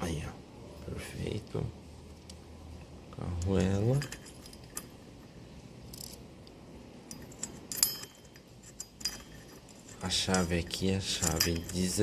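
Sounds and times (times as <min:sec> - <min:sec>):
metal parts clinking: 0:03.4 - 0:06.3, 0:07.0 - 0:12.0.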